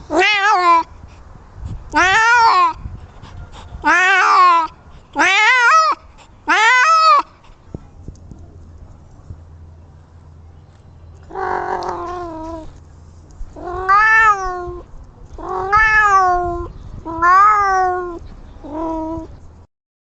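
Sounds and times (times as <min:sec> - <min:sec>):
cat meowing: 0:00.1 - 0:00.9, 0:02.0 - 0:02.8, 0:03.8 - 0:07.2, 0:11.3 - 0:12.7, 0:13.6 - 0:19.3.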